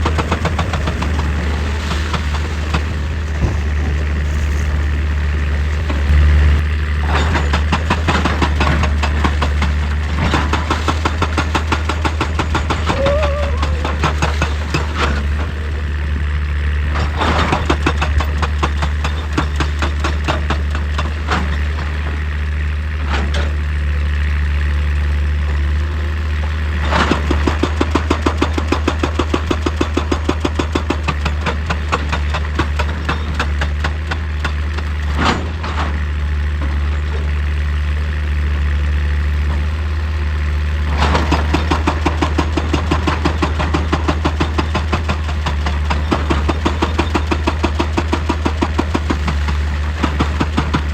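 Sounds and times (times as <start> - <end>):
diesel engine droning: 0.0 - 19.4.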